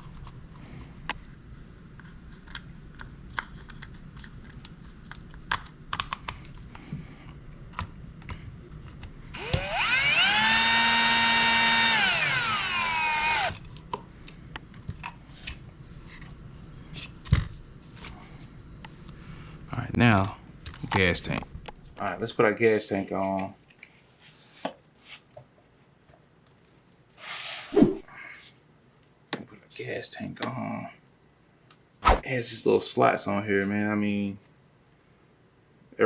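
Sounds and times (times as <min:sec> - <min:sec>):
cordless drill whining: 0:09.4 - 0:13.6.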